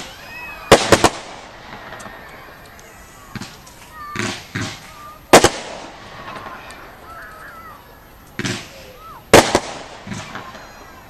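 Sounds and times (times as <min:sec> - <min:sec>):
fireworks bangs: 0:00.0 - 0:11.0
spectators calling out: 0:00.0 - 0:11.0.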